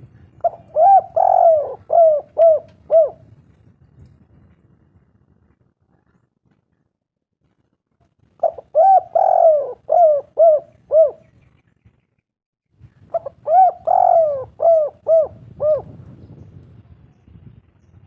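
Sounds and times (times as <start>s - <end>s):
dove cooing: 0.4s - 3.3s, 8.4s - 11.3s, 13.1s - 16.1s.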